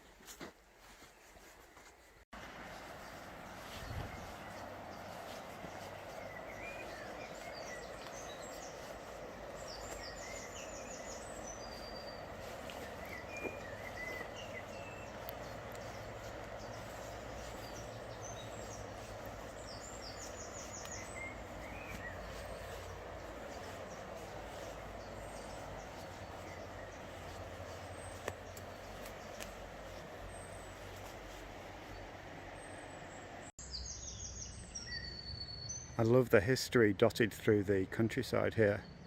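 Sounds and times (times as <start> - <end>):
songbirds singing: 0.9 - 39.0
river water flowing: 2.4 - 33.5.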